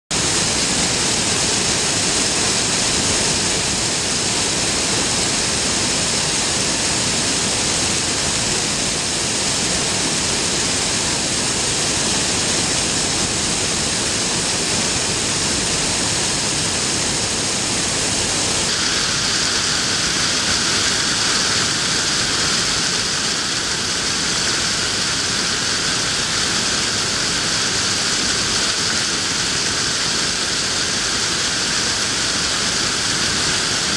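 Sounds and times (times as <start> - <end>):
waterfall rushing: 0.2 - 33.9.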